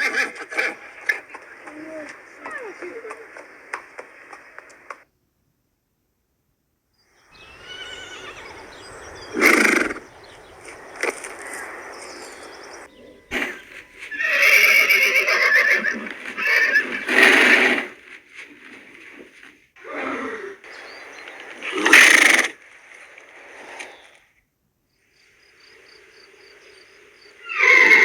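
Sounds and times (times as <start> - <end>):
horse neighing: 0.0 - 1.3, 7.3 - 10.4, 12.8 - 18.0, 21.6 - 22.6, 27.4 - 28.0.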